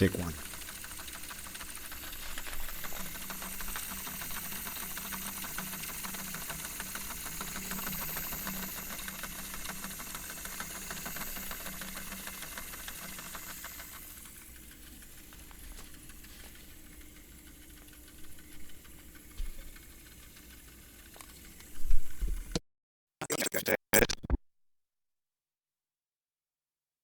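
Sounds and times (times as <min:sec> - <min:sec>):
tape recorder motor whir: 0:00.0 - 0:22.6
fluttering tape rattle: 0:00.4 - 0:17.0.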